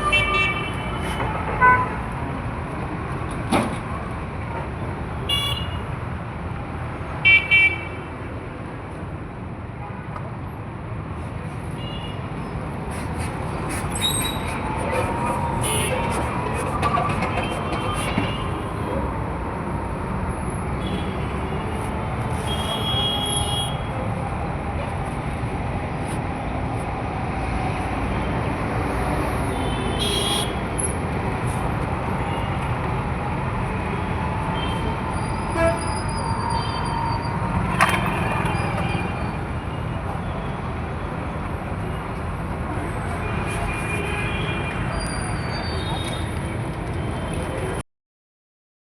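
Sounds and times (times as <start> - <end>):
traffic rumble: 8.1 - 43.9.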